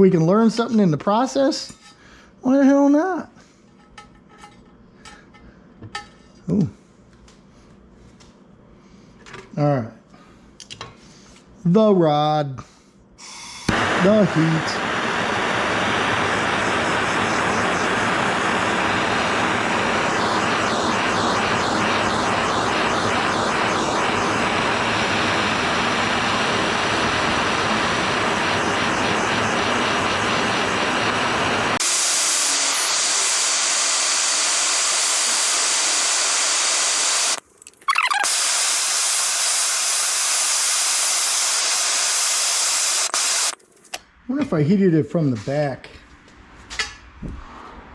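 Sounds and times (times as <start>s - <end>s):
gas torch hissing: 13.2s - 43.6s.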